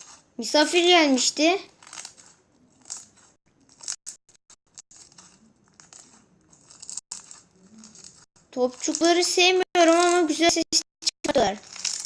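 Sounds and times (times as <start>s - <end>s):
slime crackling and crinkling: 5.0s - 9.3s, 11.3s - 12.0s.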